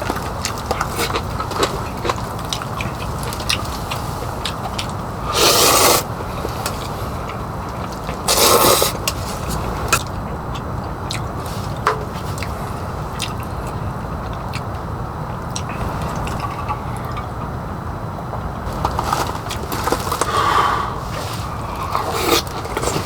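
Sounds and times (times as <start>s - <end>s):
steady rain: 9.3s - 21.6s
raindrops ticking: 9.9s - 17.6s.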